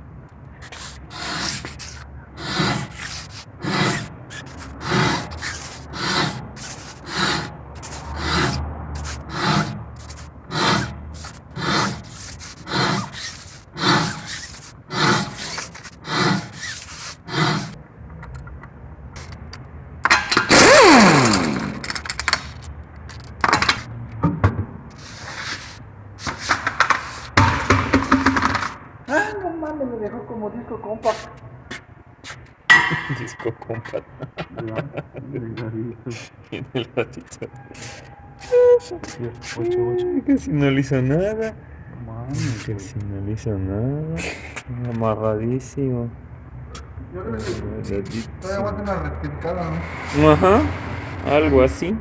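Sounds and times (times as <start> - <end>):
brake pads grinding on disc: 0.6 - 17.8, 20.1 - 23.9, 24.9 - 28.8
harsh grinding squeal: 0.6 - 17.8, 20.1 - 23.9, 37.4 - 39.8, 47.4 - 52.0.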